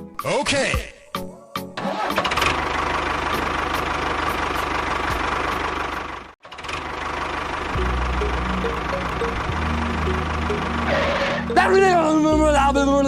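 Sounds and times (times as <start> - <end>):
small engine ticking: 2.2 - 11.7.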